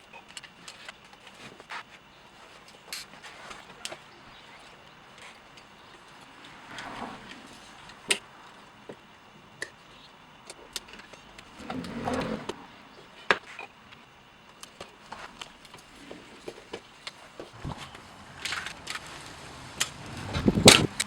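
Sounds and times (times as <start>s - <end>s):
rustling scrape: 11.5s - 12.6s, 15.1s - 21.0s.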